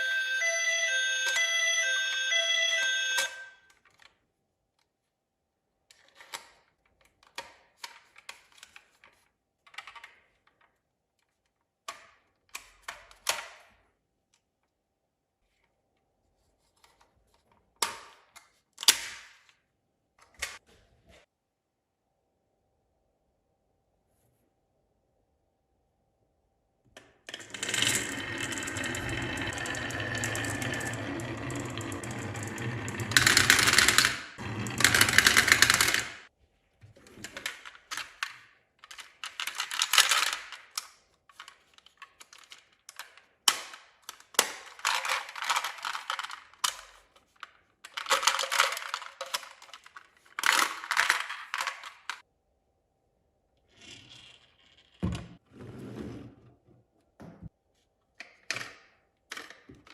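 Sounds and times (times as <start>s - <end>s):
marbles rattling down wooden tracks: 27.3s - 36.3s.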